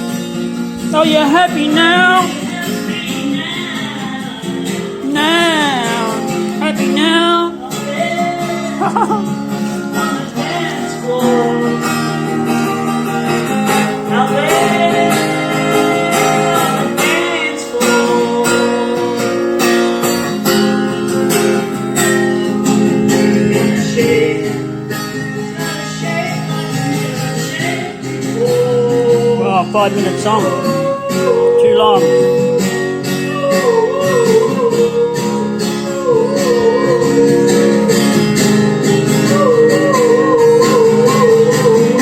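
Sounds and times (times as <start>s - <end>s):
acoustic guitar strummed: 0.0s - 42.0s
sliding melody line: 1.0s - 7.5s.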